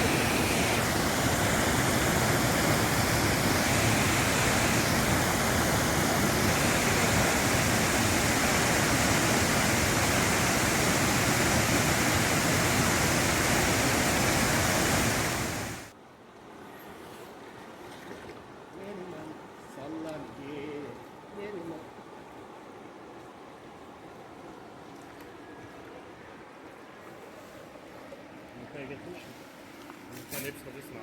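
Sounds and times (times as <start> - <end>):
waterfall rushing: 0.0 - 15.9.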